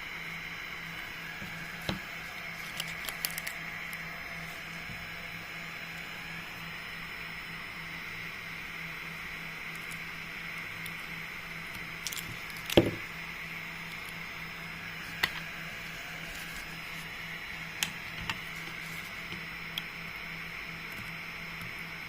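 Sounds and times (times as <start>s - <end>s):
faint hum: 0.0s - 22.0s.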